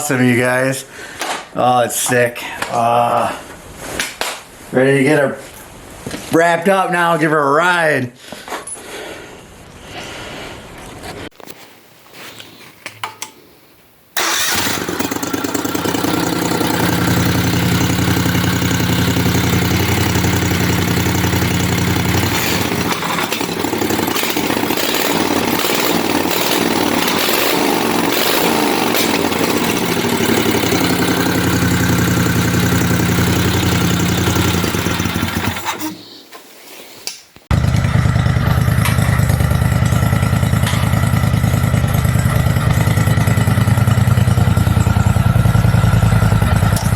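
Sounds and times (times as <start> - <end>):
mini bike engine idling and revving: 14.2 - 36.0, 37.5 - 46.9.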